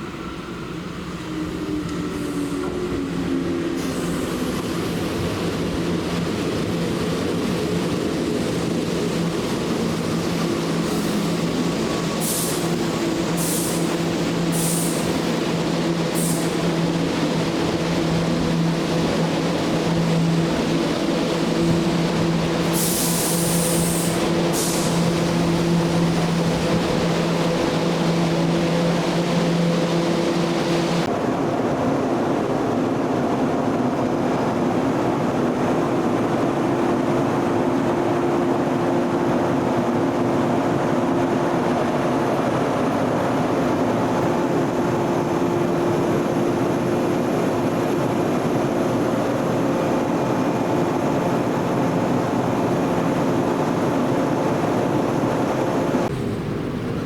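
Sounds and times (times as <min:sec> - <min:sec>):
electric train equipment humming: 0:00.0 - 0:31.1
air hisses: 0:12.2 - 0:15.2, 0:22.7 - 0:25.0.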